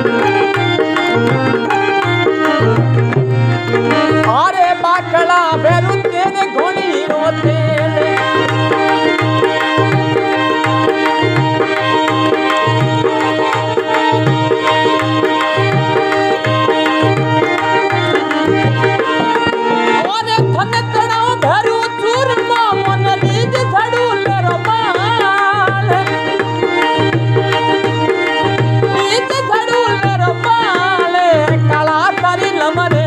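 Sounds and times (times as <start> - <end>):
held melody line: 0.0 - 33.0
person singing: 3.7 - 19.0, 20.0 - 26.9, 28.8 - 33.0
hand drum beat: 5.7 - 20.8.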